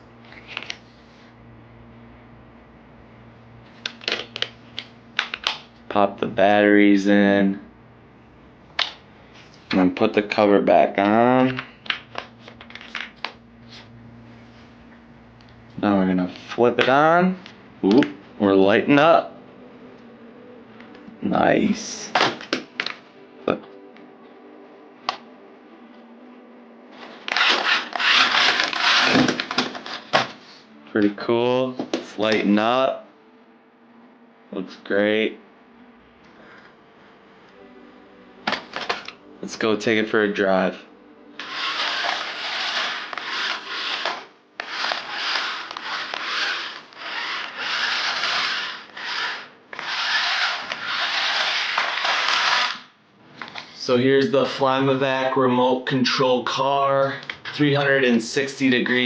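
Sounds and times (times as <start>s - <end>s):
toy car rubbing and scraping: 27.3s - 30.4s, 41.4s - 52.9s.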